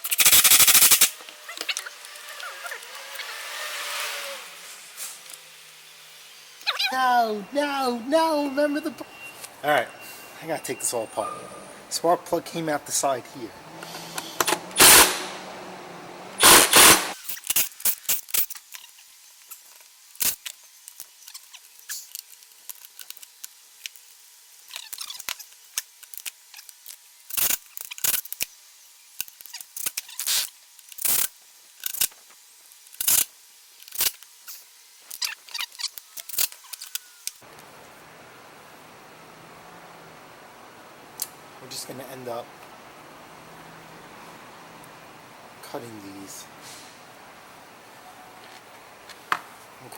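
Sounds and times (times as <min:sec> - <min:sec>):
tools and plastic parts clicking: 0:29.2 - 0:32.2, 0:35.1 - 0:37.4.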